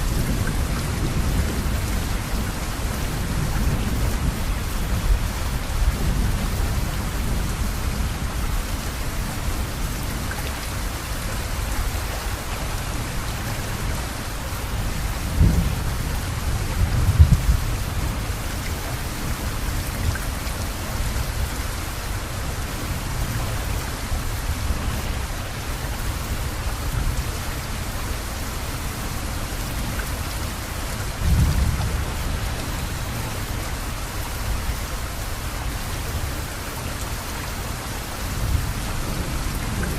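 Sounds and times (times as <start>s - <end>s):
steady rain: 0.0s - 39.9s
thunder rumbling: 15.3s - 18.4s.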